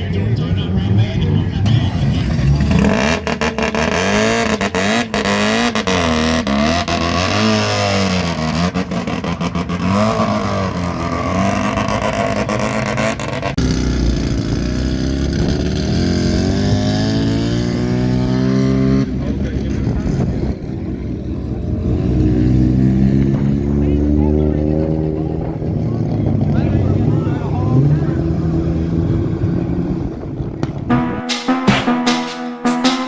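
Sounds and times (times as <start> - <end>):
car engine revving: 0.0 - 31.3
sharp exhaust pops: 1.6 - 18.8.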